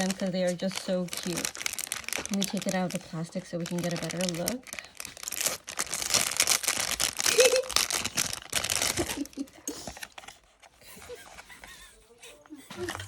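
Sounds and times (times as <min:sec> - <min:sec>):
plastic bag crinkling: 0:00.0 - 0:11.4.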